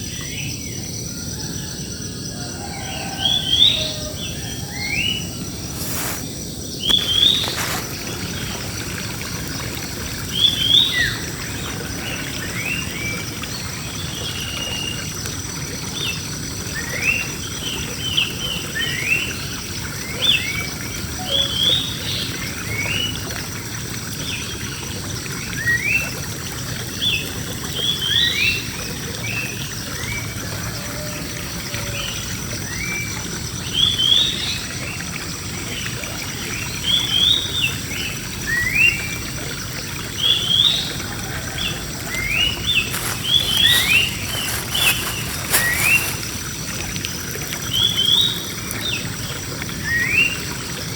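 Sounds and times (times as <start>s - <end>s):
small birds chirping: 5.2s - 15.0s, 41.6s - 46.6s.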